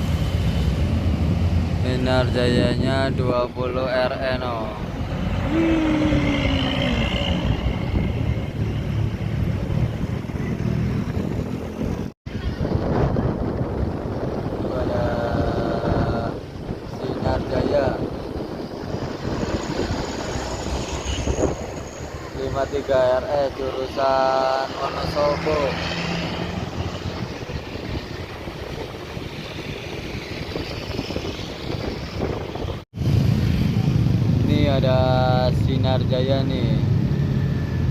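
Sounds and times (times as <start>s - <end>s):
bus engine rumbling: 0.0s - 37.9s.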